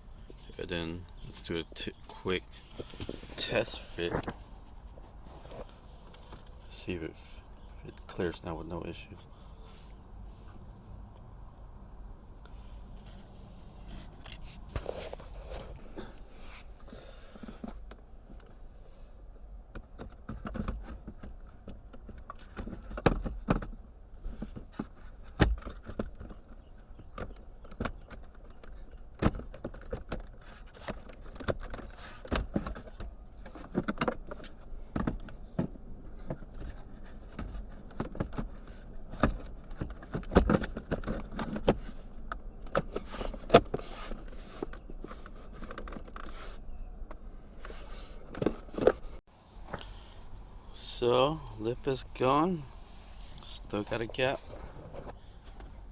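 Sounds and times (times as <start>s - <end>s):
plastic parts clicking and scraping: 19.8s - 50.0s.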